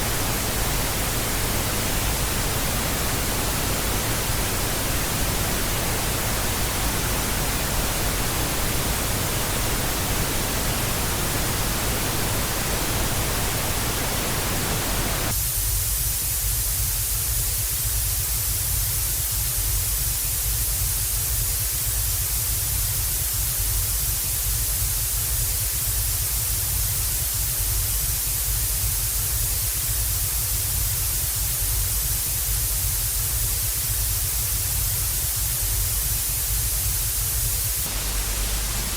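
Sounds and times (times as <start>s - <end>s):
tv static hiss: 0.0s - 15.3s, 29.0s - 38.9s.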